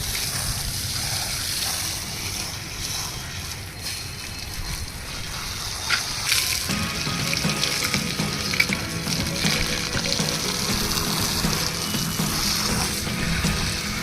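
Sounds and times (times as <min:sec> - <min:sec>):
running water hitting a wall: 0:04.8 - 0:14.0
background music: 0:06.7 - 0:14.0.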